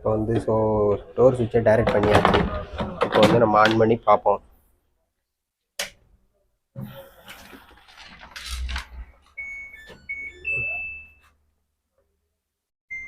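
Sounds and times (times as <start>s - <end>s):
washing machine electronic beeps: 9.3s - 11.4s.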